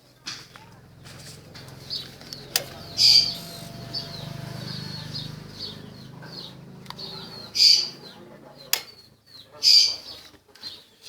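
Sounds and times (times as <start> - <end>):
motorcycle engine idling: 0.0 - 9.5
birds chirping: 0.2 - 11.0.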